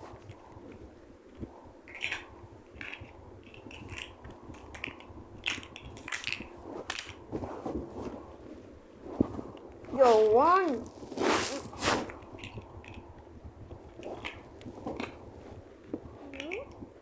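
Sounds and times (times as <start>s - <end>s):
plastic pieces crinkling and clicking: 2.8s - 7.2s.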